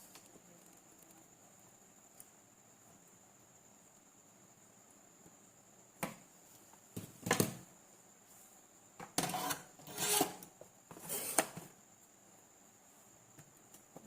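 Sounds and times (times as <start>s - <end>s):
hand tools clicking and scraping: 9.2s - 11.7s.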